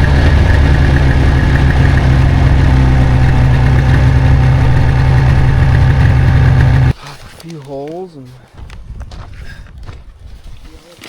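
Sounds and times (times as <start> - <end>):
snowmobile engine droning: 0.0 - 6.9.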